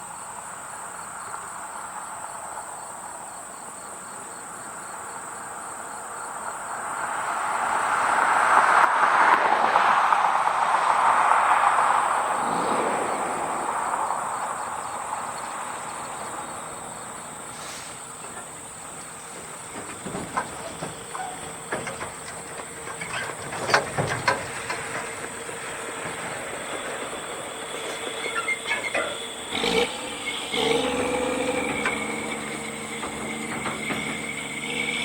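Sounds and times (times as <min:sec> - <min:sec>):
road noise: 0:00.0 - 0:35.0
vehicle passing: 0:06.8 - 0:35.0
sharp clicks and knocks: 0:18.2 - 0:27.1, 0:27.8 - 0:35.0.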